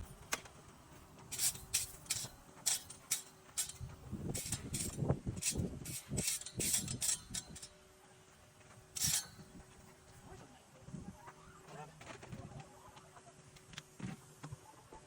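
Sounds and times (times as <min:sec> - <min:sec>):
sharp clicks and rattles: 0:01.2 - 0:07.7.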